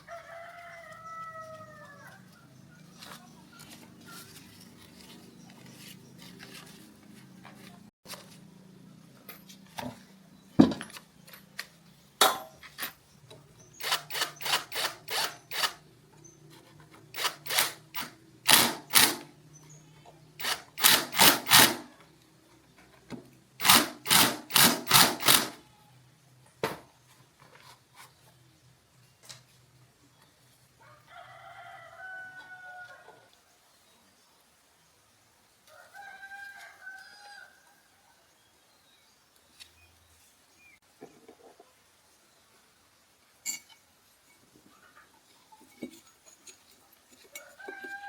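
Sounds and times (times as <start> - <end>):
rooster crowing: 0.0 - 2.5, 30.8 - 33.3, 35.7 - 38.0, 47.3 - 48.0.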